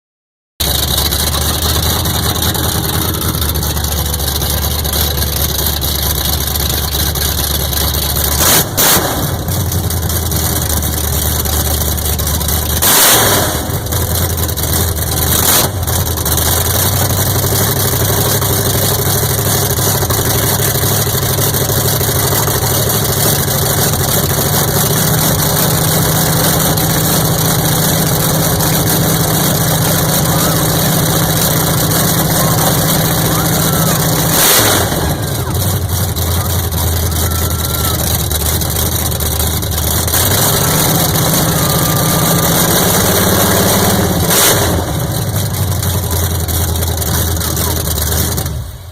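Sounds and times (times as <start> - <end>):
loud rushes of noise: 0.6 - 6.7, 22.4 - 48.9
engine idling: 0.6 - 48.9.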